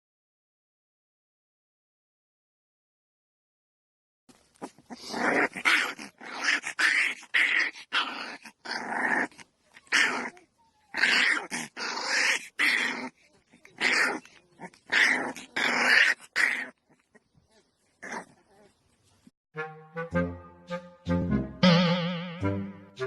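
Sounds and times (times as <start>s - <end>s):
dog growling: 4.6s - 18.8s.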